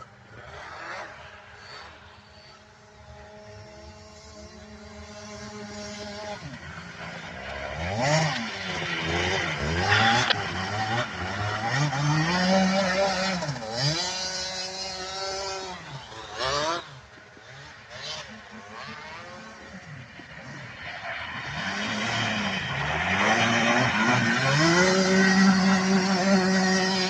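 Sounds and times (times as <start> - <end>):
go-kart engine revving: 0.0 - 27.0.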